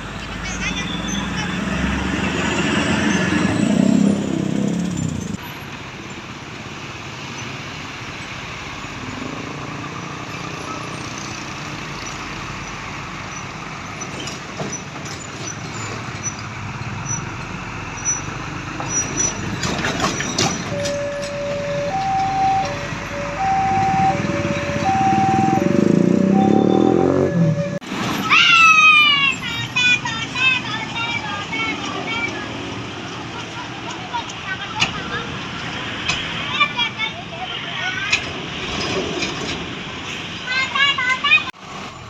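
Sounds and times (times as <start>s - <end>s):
heavy vehicle passing: 0.0s - 5.4s, 15.9s - 37.0s
traffic noise from trucks: 0.0s - 42.0s
multi-tone bus horn tune: 20.8s - 27.8s.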